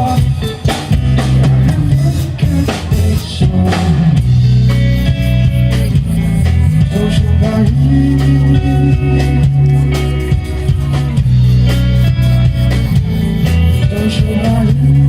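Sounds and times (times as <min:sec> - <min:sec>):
bass guitar: 0:00.0 - 0:15.0
drum kit: 0:00.0 - 0:15.0
electric guitar: 0:00.0 - 0:15.0.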